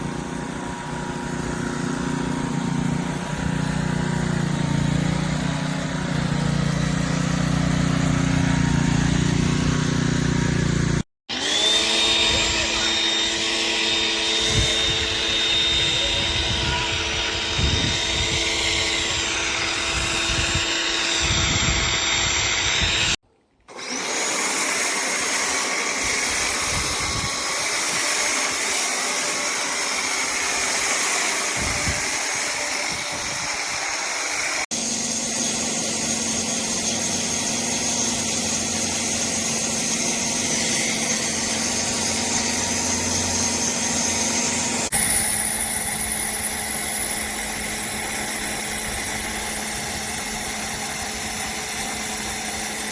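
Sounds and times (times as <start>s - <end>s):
pressure washer spraying: 24.2s - 52.1s.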